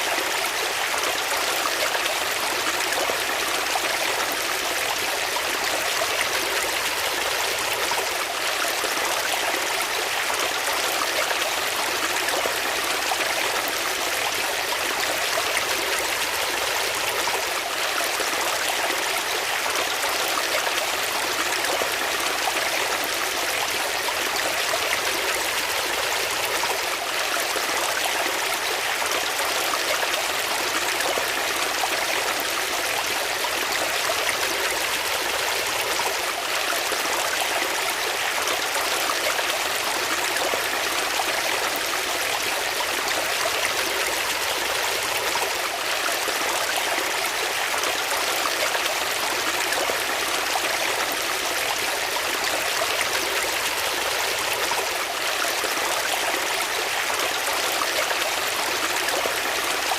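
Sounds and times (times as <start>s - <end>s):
water flowing in a stream: 0.0s - 59.9s.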